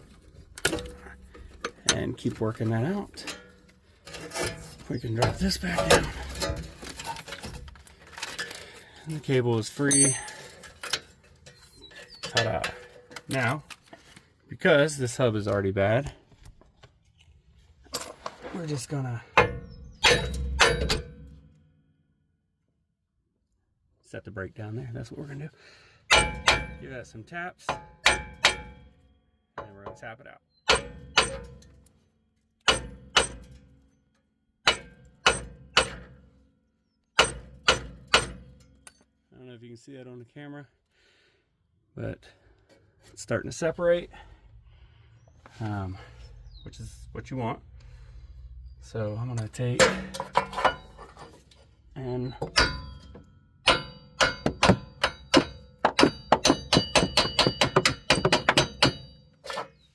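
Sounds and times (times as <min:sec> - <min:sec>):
hammer striking metal: 0:19.4 - 0:21.6, 0:26.1 - 0:26.9, 0:27.7 - 0:28.8, 0:30.7 - 0:31.7, 0:32.7 - 0:33.7, 0:34.6 - 0:36.2, 0:37.2 - 0:39.0, 0:49.8 - 0:51.0, 0:52.4 - 0:59.7.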